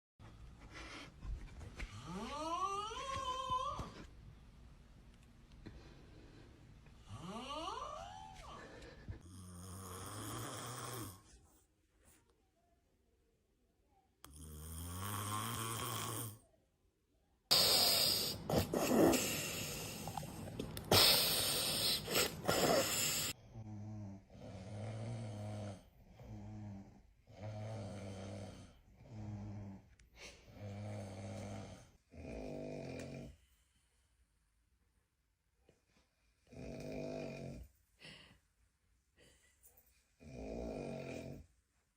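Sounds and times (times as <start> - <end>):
person snoring: 7.0 - 11.3, 14.3 - 16.4, 17.5 - 29.8, 30.5 - 33.4, 36.5 - 37.7, 40.2 - 41.4.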